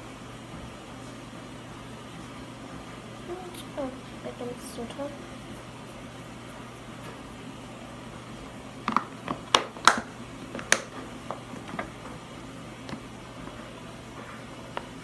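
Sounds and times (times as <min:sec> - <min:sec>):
utensil tapping a container: 0:08.9 - 0:11.9.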